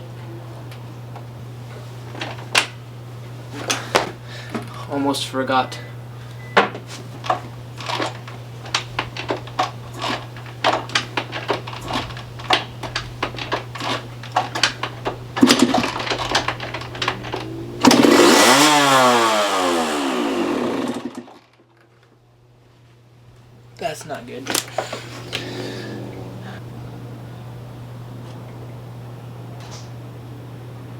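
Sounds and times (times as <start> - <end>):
dirt bike engine sputtering and revving: 15.4 - 21.2, 25.0 - 27.1.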